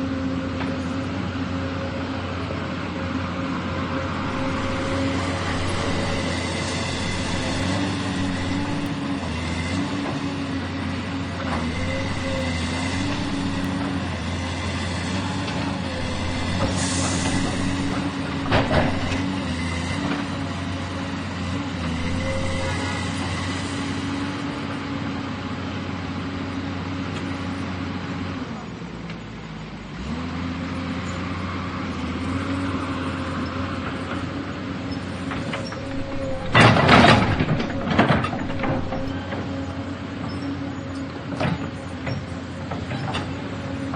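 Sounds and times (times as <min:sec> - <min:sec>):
excavator diesel engine running: 0:00.0 - 0:43.9
faint high whine: 0:04.2 - 0:09.0, 0:11.6 - 0:13.9
thin high tone: 0:04.2 - 0:09.0, 0:11.6 - 0:13.9, 0:15.8 - 0:19.2, 0:21.9 - 0:23.0.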